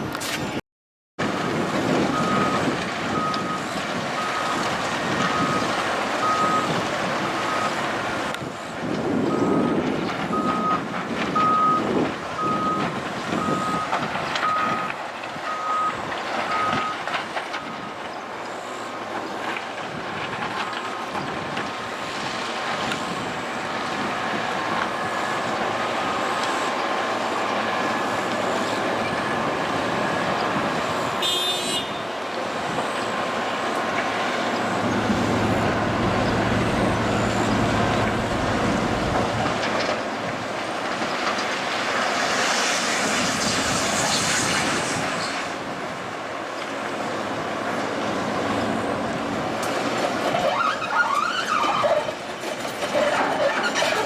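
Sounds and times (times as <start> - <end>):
steady background noise: 1.2 - 54.0
reversing alarm beeping: 2.1 - 6.8, 7.4 - 7.8, 9.3 - 10.8, 11.4 - 17.9, 24.9 - 31.4, 34.6 - 39.3.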